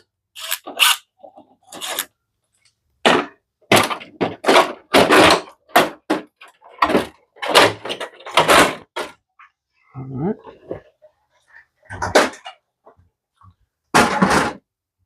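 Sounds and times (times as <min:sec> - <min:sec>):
parts knocking and clattering: 0:03.0 - 0:09.3, 0:11.8 - 0:13.1, 0:13.9 - 0:14.7.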